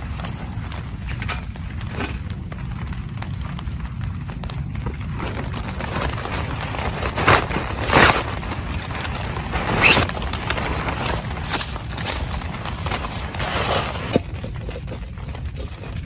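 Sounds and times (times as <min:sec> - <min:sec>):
low rumble: 0:00.0 - 0:16.0
steady rain: 0:00.0 - 0:16.0
fabric rustling scrapes: 0:04.8 - 0:16.0.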